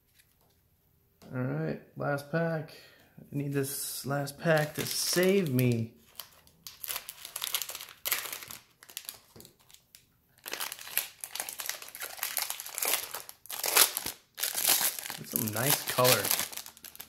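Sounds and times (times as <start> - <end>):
plastic wrapper crinkling and tearing: 4.4 - 17.0.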